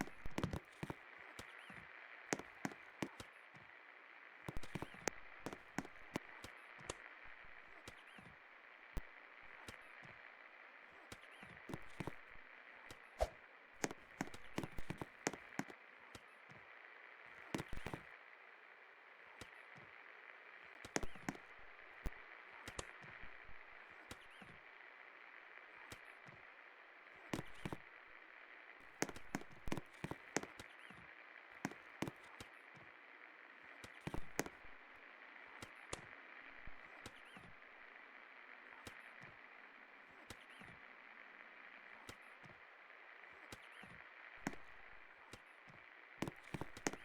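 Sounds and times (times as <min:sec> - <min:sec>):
sharp clicks and taps: 0:00.0 - 0:01.5, 0:02.3 - 0:03.3, 0:04.5 - 0:07.0, 0:12.9 - 0:15.8, 0:17.6 - 0:18.0, 0:20.8 - 0:22.9, 0:29.0 - 0:30.7, 0:33.8 - 0:34.8, 0:46.2 - 0:47.0.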